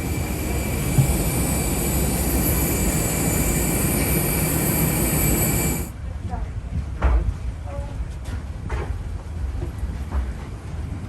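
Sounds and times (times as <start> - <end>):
aircraft rumble: 0.0 - 5.9
high steady aircraft whines: 0.0 - 5.9.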